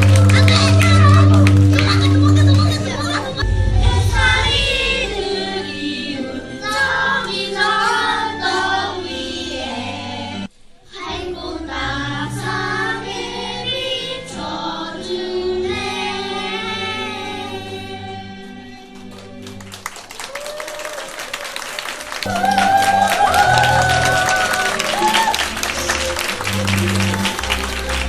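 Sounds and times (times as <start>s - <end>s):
chorus of children and adults singing: 2.9s - 18.8s.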